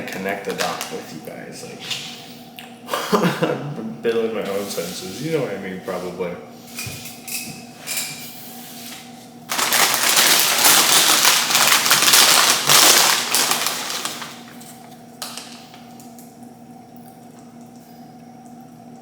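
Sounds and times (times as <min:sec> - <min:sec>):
plastic packaging crinkling: 0:00.1 - 0:01.0, 0:09.5 - 0:15.6.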